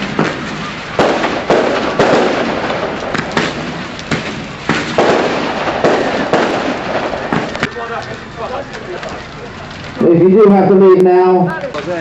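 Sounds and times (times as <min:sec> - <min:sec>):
fireworks bangs with rumbling echo: 0:00.0 - 0:09.4.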